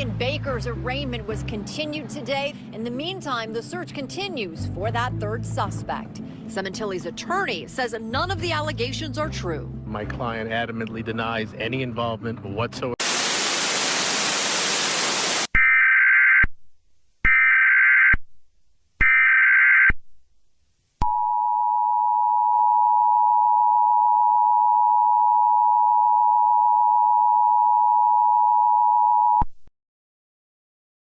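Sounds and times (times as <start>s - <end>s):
burst of static: 13.0s - 15.5s.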